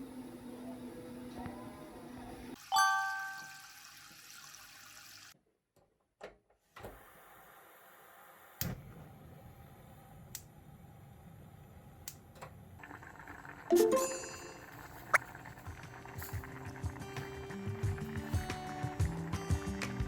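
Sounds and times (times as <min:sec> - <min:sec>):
bright chime: 0:02.7 - 0:03.6.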